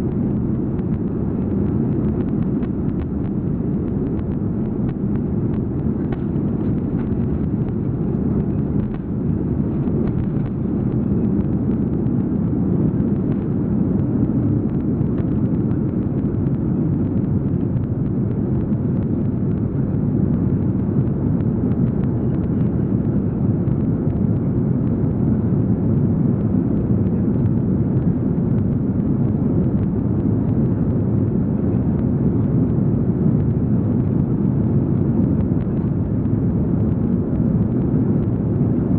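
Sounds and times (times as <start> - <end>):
jet engines rumbling: 0.0 - 38.9.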